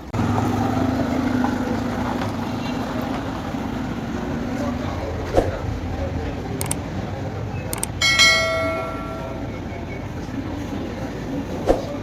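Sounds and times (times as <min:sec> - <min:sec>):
workshop background noise: 0:00.0 - 0:10.2
light clicks: 0:06.6 - 0:06.8, 0:07.7 - 0:08.0
hammer hitting metal ringing: 0:08.0 - 0:09.5.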